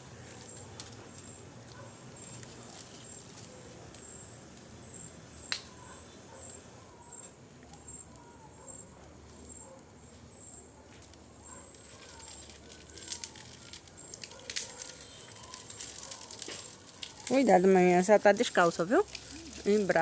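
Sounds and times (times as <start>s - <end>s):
bonfire crackling and popping: 0.0s - 20.0s
high insect chirp: 4.0s - 8.9s.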